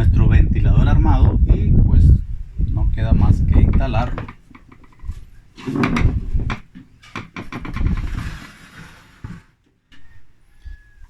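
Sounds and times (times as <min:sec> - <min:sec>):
parts knocking and scraping: 0:03.5 - 0:10.1.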